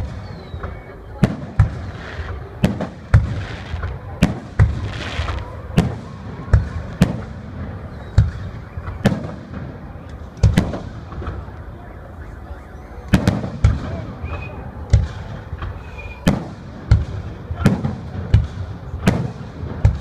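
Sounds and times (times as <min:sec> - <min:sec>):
crackling hiss: 0:01.4 - 0:05.7.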